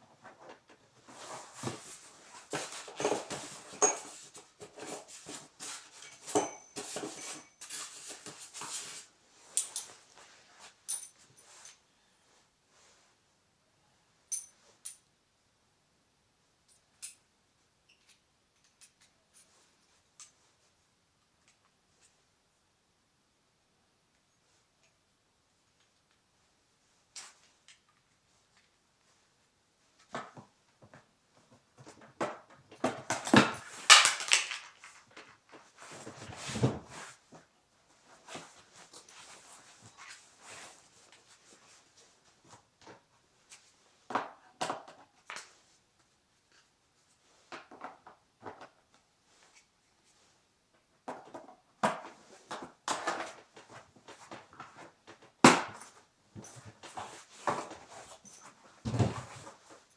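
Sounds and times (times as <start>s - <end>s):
objects clicking and knocking: 32.1s - 35.4s.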